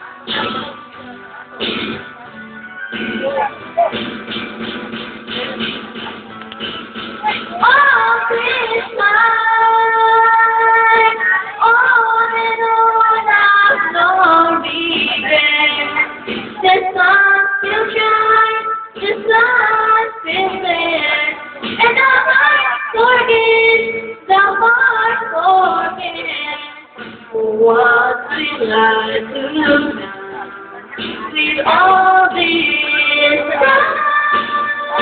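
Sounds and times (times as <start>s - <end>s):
backing track: 0.0s - 35.0s
woman singing a pop ballad: 7.6s - 35.0s.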